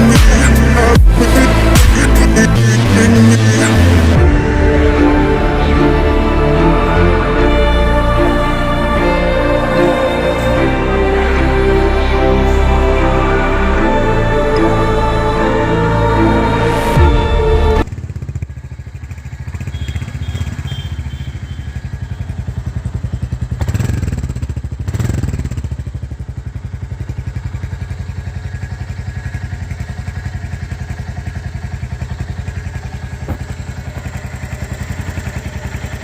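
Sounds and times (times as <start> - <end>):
motorcycle engine idling: 17.8 - 36.0.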